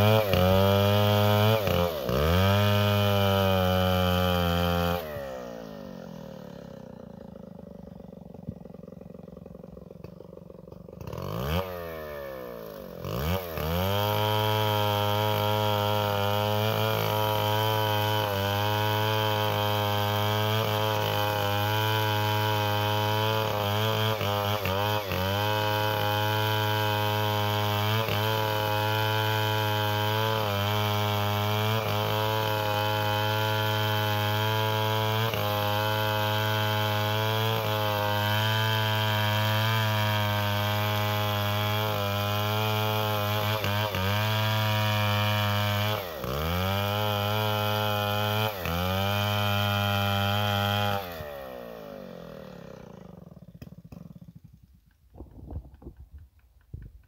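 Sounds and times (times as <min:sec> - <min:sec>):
chainsaw cutting wood: 0:00.0 - 0:57.0.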